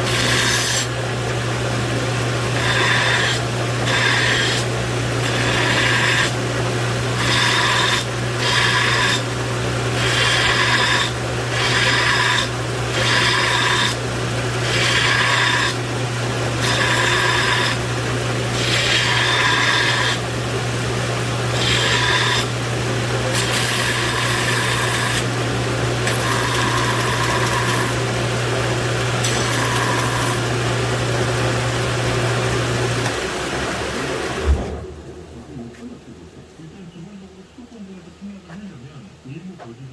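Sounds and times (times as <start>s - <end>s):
grinder motor hum: 0.0s - 35.9s
grinding metal: 2.5s - 6.4s, 7.1s - 14.0s, 16.5s - 20.2s, 21.5s - 25.4s, 26.0s - 28.4s, 29.1s - 30.6s.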